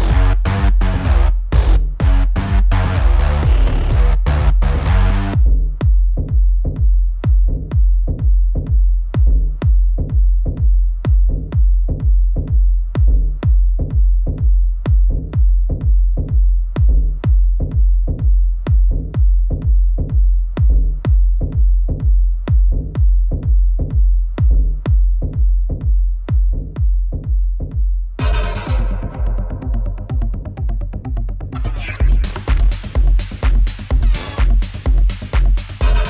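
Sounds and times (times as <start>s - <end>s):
deep bass: 0.0s - 36.0s
techno drum-machine kick: 0.0s - 36.0s.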